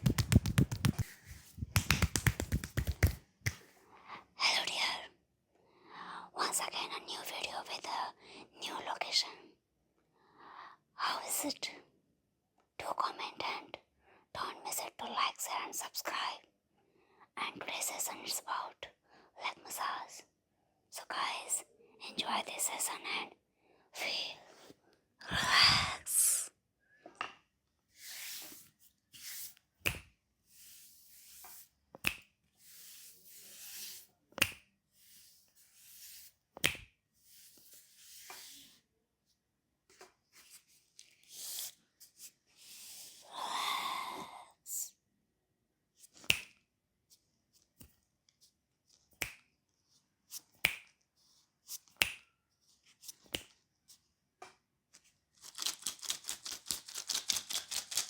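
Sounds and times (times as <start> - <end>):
rapid rhythmic hand tapping: 0.0 - 3.6
hand smacking skin: 0.0 - 3.7
hands rubbing skin: 0.0 - 3.8, 55.4 - 58.0.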